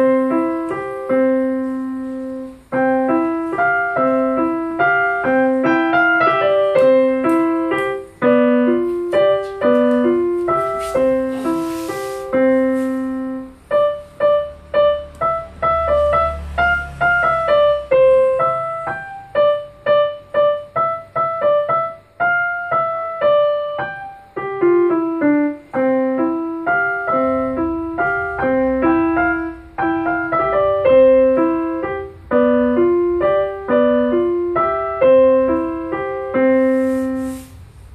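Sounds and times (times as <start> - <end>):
piano melody: 0.0 - 37.9
brief hiss: 10.6 - 13.3, 36.6 - 37.8.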